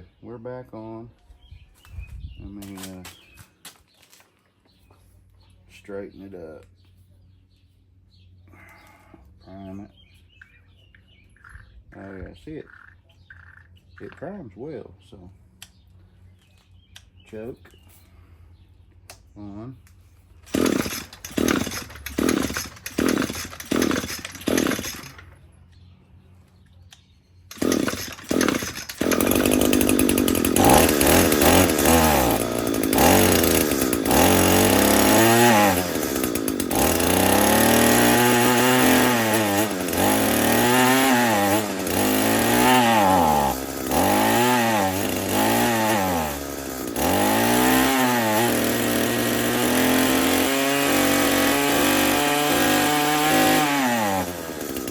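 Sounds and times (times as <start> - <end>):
starter cord pulls: 20.4 - 25.4, 27.5 - 54.9
string trimmer engine revving: 20.5 - 25.4, 27.5 - 54.9.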